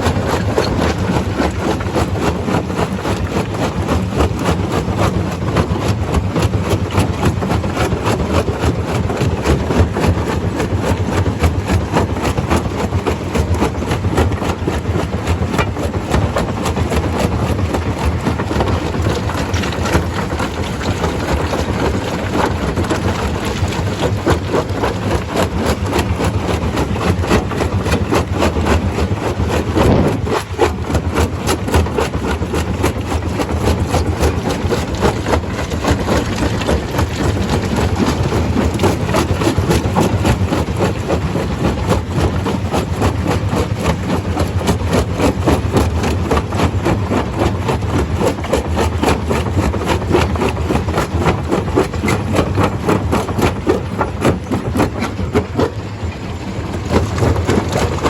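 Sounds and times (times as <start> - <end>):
stone crusher rattling: 18.0 - 32.4, 33.0 - 40.4, 50.7 - 58.0.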